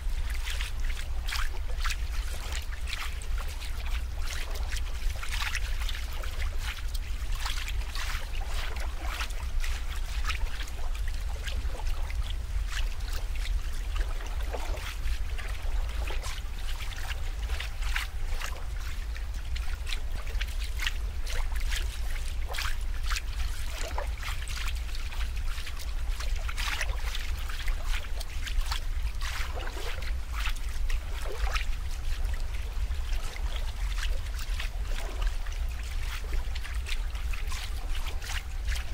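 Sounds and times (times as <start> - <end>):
crackling drips: 0.0 - 38.9
water trickling and splashing: 0.0 - 38.9.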